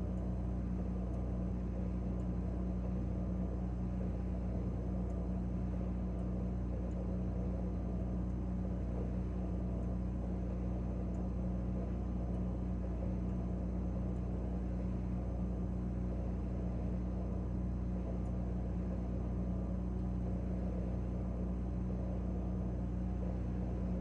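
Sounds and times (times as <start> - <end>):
refrigerator humming: 0.0 - 24.0.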